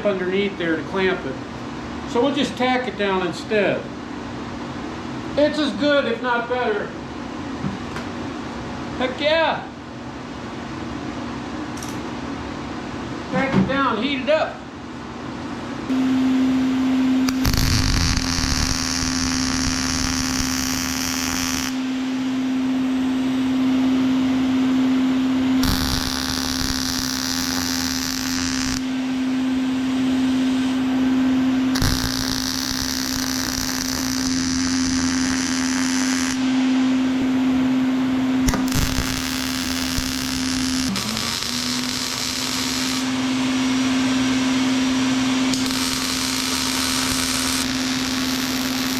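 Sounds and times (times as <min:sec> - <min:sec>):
steady hum: 0:14.2 - 0:48.9
welding arc crackling hiss: 0:17.3 - 0:21.9, 0:25.6 - 0:28.9, 0:31.8 - 0:36.4, 0:38.4 - 0:43.9, 0:45.5 - 0:48.9.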